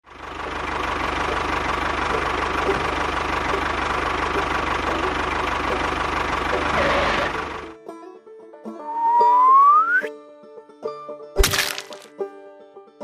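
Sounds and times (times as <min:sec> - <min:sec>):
engine chugging: 0:00.0 - 0:07.8.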